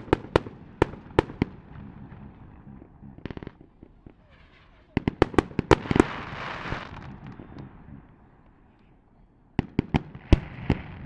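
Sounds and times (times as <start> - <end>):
firework crackle: 0.0 - 8.5
firework bangs: 0.0 - 8.6, 9.6 - 11.0.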